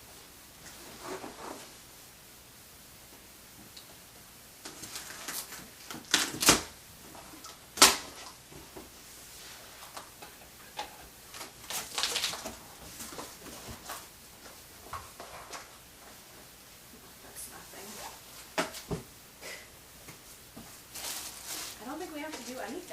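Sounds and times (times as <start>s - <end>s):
cardboard scraping: 0.7s - 1.8s
packing rustling: 11.3s - 14.1s, 20.9s - 22.9s.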